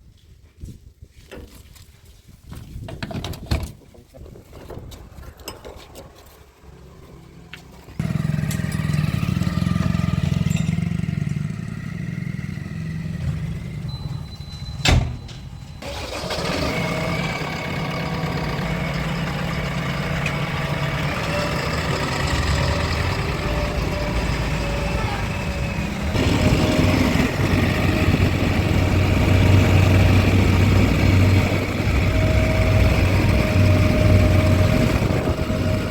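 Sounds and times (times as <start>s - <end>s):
diesel machinery engine running: 7.0s - 35.9s.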